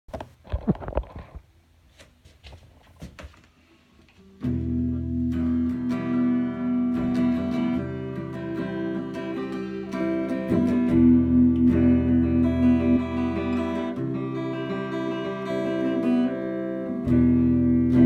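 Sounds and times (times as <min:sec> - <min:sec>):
guitar strummed and picked: 0:04.2 - 0:18.0.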